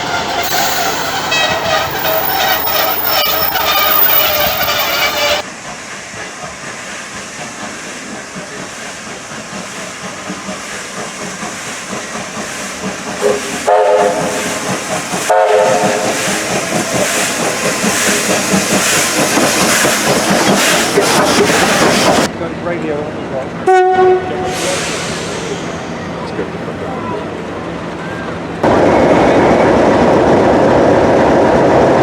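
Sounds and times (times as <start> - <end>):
train horn blasts: 0.0 - 5.4, 13.2 - 14.4, 15.3 - 16.2, 23.6 - 24.6
hissing rail noise: 0.0 - 22.3, 24.4 - 27.0
train running noise: 0.0 - 32.0.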